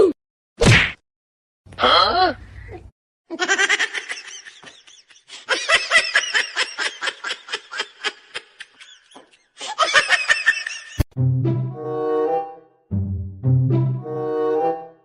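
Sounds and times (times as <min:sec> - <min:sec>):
hearty laughter: 0:03.3 - 0:11.0.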